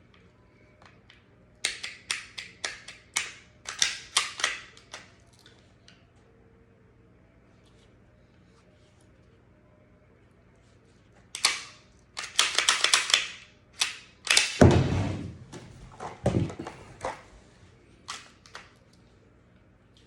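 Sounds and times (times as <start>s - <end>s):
pistol parts clicking and rattling: 1.1s - 5.6s, 11.4s - 14.9s, 18.1s - 18.8s
heavy thud: 14.6s - 17.2s.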